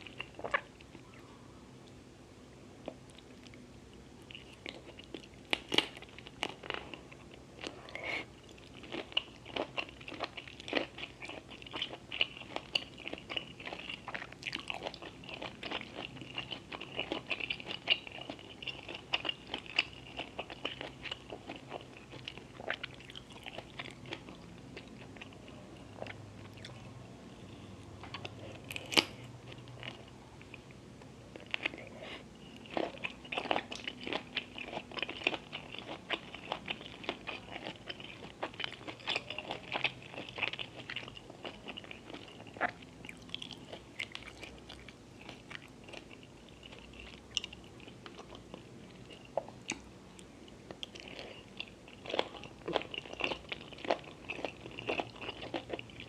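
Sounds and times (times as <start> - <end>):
crunchy chewing: 4.2 - 30.7, 31.4 - 56.0.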